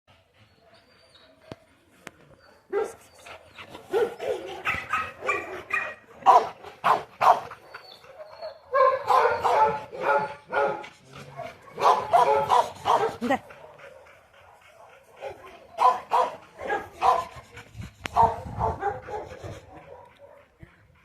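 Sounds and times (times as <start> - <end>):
dog barking: 3.9 - 7.4, 8.7 - 14.0, 15.2 - 17.3, 18.2 - 19.2, 19.8 - 20.5.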